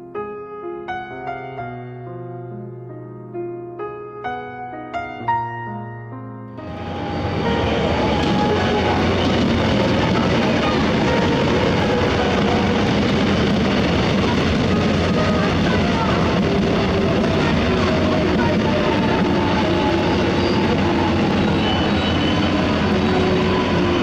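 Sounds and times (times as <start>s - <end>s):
passenger train rumbling: 6.6s - 24.0s.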